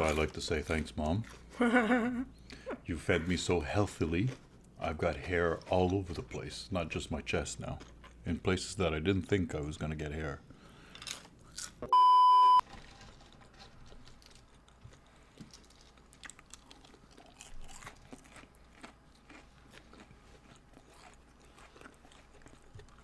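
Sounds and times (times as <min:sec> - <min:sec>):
chewing crispy fried food: 0:00.0 - 0:02.1, 0:03.3 - 0:09.8, 0:10.5 - 0:11.9, 0:12.7 - 0:23.0
loud steady beep tone: 0:11.9 - 0:12.6.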